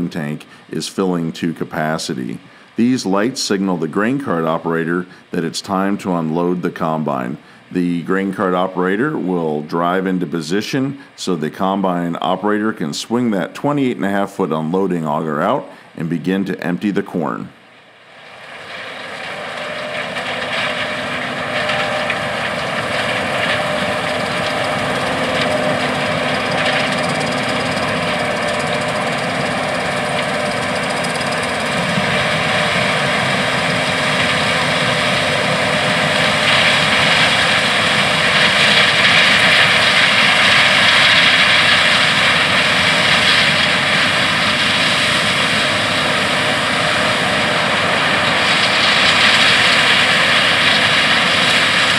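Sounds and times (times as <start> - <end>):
combine harvester engine drone: 0.0 - 51.9.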